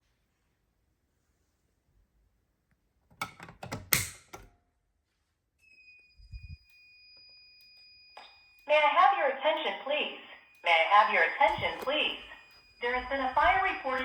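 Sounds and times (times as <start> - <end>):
faint high-pitched tone: 5.6 - 14.0.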